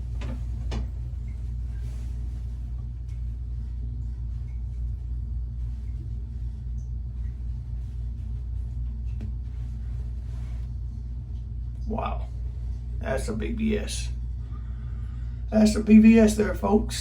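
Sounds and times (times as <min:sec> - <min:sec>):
steady low room hum: 0:00.0 - 0:17.0.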